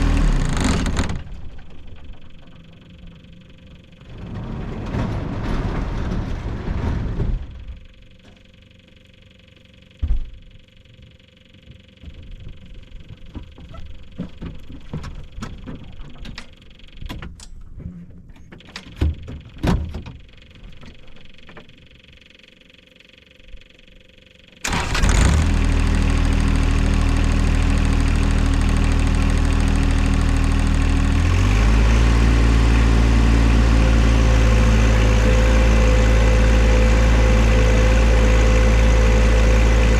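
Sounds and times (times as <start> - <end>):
tractor diesel engine running: 0.0 - 17.1, 18.9 - 39.9.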